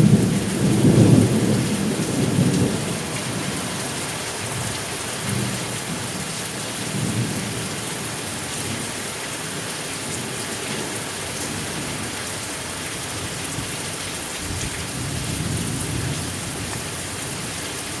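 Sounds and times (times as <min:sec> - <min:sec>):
thunder rumbling: 0:00.0 - 0:03.6
steady rain hissing: 0:00.0 - 0:18.0.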